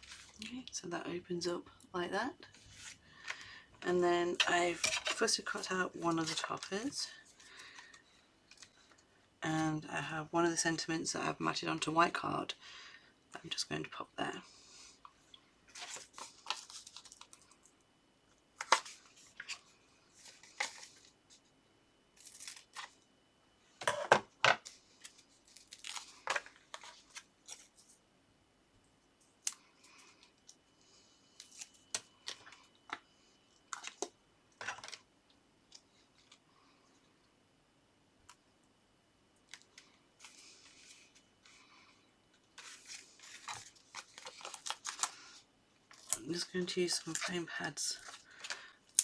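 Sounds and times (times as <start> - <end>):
paper rustling: 42.6 - 45.2.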